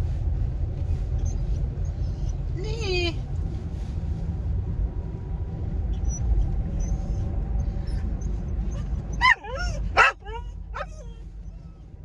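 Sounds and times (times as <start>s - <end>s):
car road and engine rumble: 0.0s - 12.0s
dog whining: 6.0s - 12.0s.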